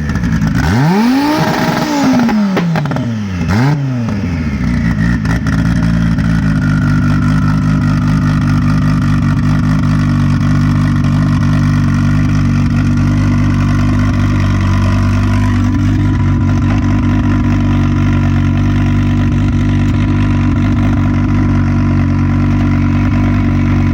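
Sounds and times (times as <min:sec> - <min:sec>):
car engine running steadily: 0:00.0 - 0:23.9
high engine whine: 0:00.0 - 0:23.9.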